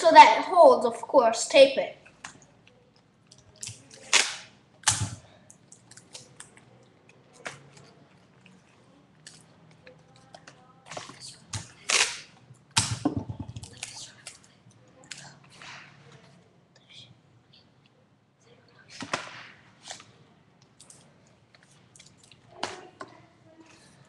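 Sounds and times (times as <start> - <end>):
adhesive tape ripping: 3.6 - 5.2, 11.7 - 13.0.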